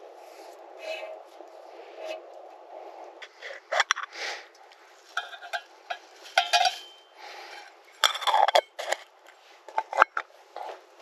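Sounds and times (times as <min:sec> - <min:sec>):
sharp metallic clinks and knocks: 0:05.1 - 0:08.9.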